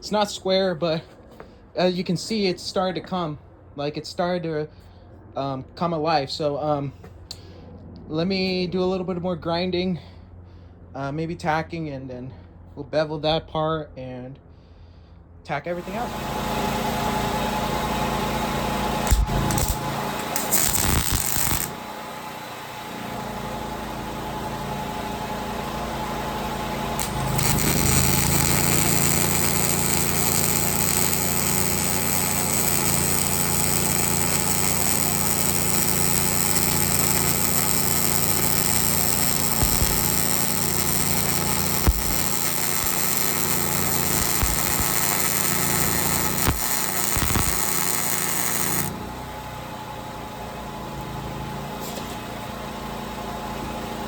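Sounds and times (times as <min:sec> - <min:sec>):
angle grinder grinding steel: 0:19.0 - 0:21.8, 0:26.9 - 0:49.0.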